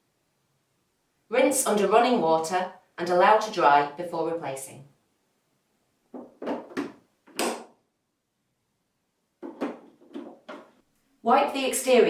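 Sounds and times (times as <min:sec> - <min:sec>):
plastic parts knocking and rattling: 0:06.1 - 0:07.7, 0:09.4 - 0:10.8.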